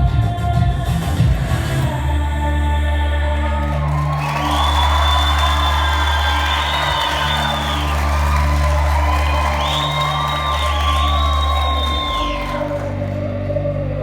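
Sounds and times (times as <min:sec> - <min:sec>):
deep steady drone: 0:01.6 - 0:14.0.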